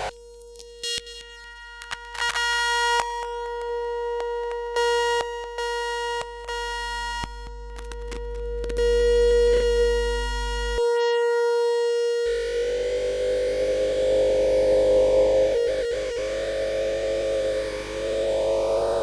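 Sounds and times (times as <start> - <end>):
electronic oscillator buzz: 8.4 - 19.0.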